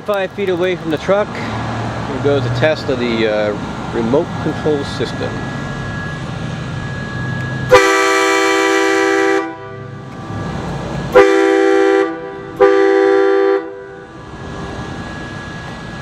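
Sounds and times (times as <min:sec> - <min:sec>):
air train horn blasts: 0:07.7 - 0:10.2, 0:11.0 - 0:14.1.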